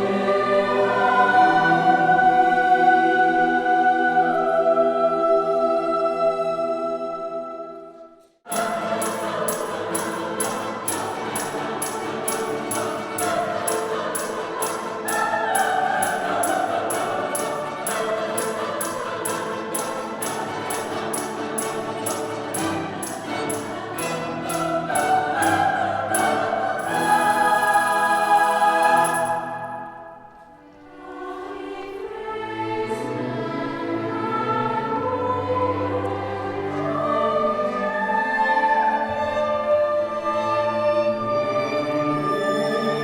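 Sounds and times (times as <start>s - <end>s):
choir singing: 0.0s - 43.0s
crisp steady beat: 8.5s - 30.0s
strings and keyboard: 8.5s - 43.0s.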